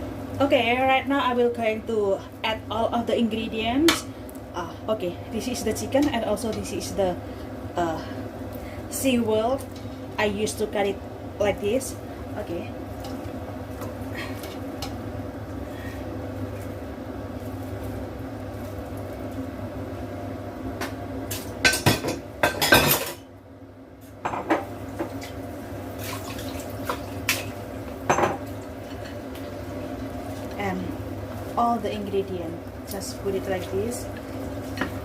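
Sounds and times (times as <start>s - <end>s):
steady low hum: 0.0s - 35.0s
pots and utensils clattering: 21.3s - 23.2s.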